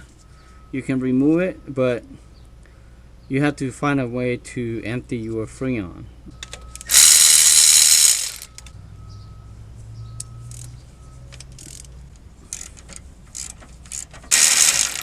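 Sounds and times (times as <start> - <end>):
ratchet wrench clicking: 6.8 - 8.7, 11.4 - 15.0.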